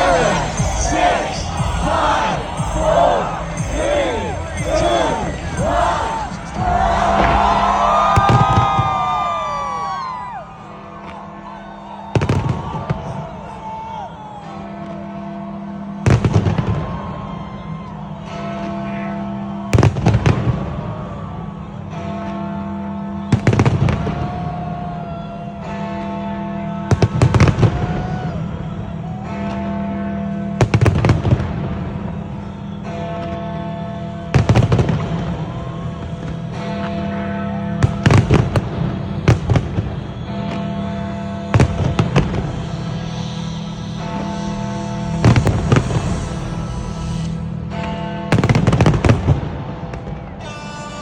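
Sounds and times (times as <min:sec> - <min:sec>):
fireworks bangs: 0:00.0 - 0:10.0, 0:12.1 - 0:13.3, 0:34.3 - 0:36.7, 0:37.8 - 0:50.7
music with held chords: 0:00.0 - 0:11.5, 0:25.8 - 0:50.0.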